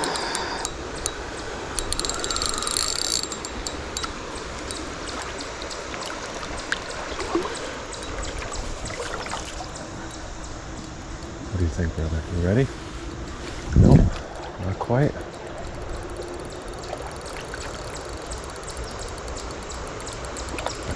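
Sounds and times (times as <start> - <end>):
fishing reel clicking: 0.0 - 8.9, 15.3 - 20.8
river current rushing: 0.0 - 11.6.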